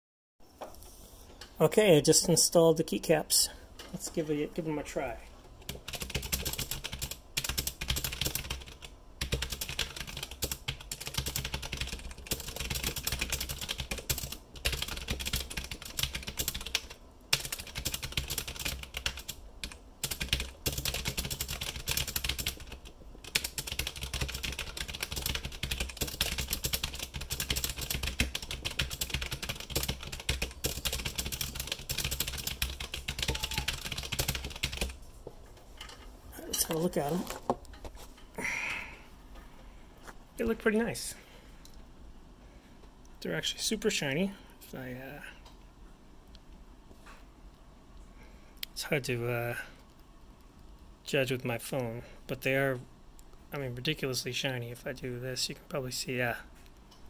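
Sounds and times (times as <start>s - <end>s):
steady low hum: 0.4s - 57.0s
fast typing on mechanical keyboard: 5.6s - 35.0s.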